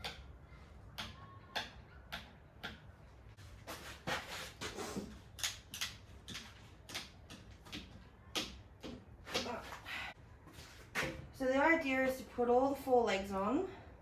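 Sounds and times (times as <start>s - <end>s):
rustling and scraping: 3.3s - 7.7s, 9.2s - 11.4s.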